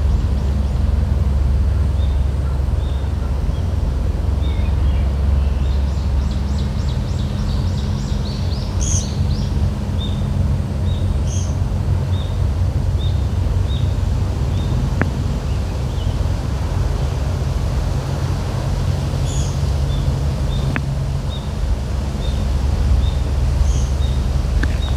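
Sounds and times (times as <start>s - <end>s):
wind rumble on microphone: 0.0s - 24.9s
small bird chirping: 22.2s - 24.9s.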